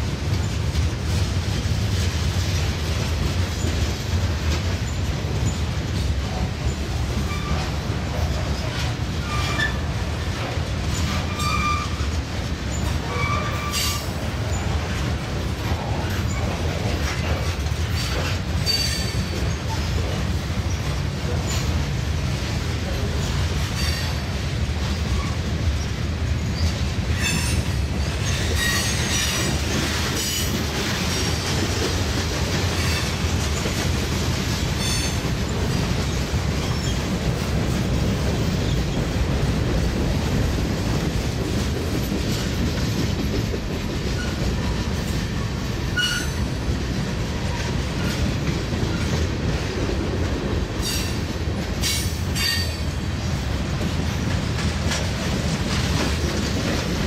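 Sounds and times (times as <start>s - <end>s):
freight train rumbling: 0.0s - 57.0s
wheels clacking over rail joints: 0.0s - 57.0s
wheel squeals: 8.6s - 9.9s, 10.9s - 12.1s, 12.7s - 14.1s.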